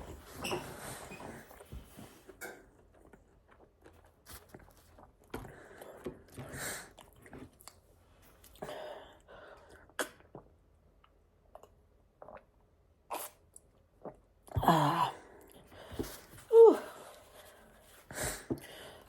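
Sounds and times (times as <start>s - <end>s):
person chewing food: 2.5s - 7.8s.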